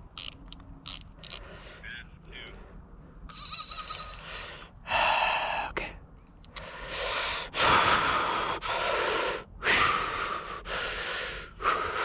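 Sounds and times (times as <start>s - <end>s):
person breathing heavily: 1.3s - 1.9s, 3.4s - 12.0s.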